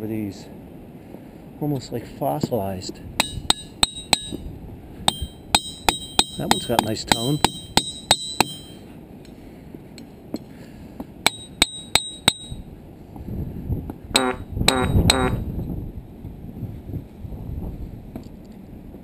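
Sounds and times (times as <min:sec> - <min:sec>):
hammer striking ringing rocks: 0:03.2 - 0:04.4, 0:05.1 - 0:08.8, 0:10.3 - 0:12.7, 0:14.2 - 0:15.4.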